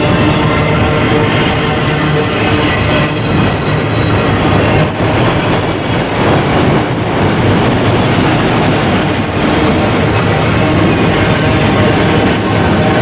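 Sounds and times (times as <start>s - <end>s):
high-pitched wheel squeal: 0.0s - 10.0s
train wheels rumbling on rails: 0.0s - 13.0s.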